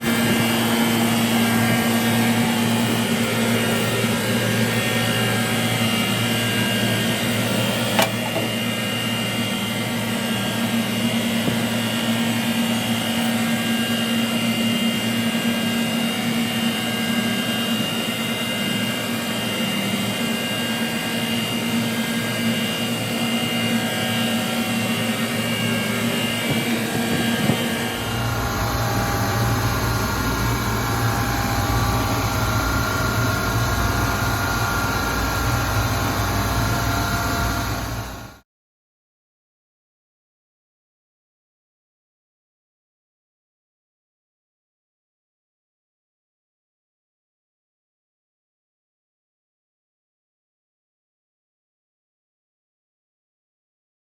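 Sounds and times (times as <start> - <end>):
refrigeration compressors humming: 0.0 - 15.3, 20.9 - 38.4
sharp click: 7.6 - 8.5.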